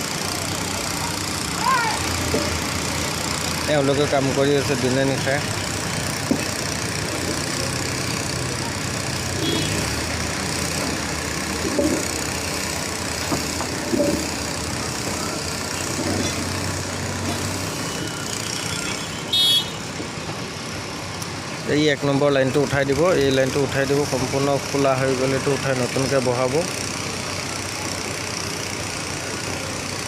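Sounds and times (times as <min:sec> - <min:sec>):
diesel engine running: 0:00.0 - 0:30.0
short horn toot: 0:09.4 - 0:09.8, 0:18.8 - 0:19.8.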